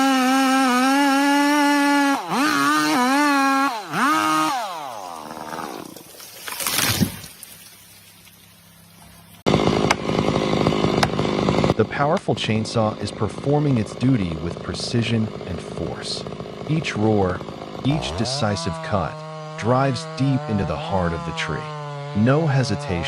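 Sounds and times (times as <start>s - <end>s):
chainsaw running at full throttle: 0.0s - 6.2s, 9.5s - 23.0s.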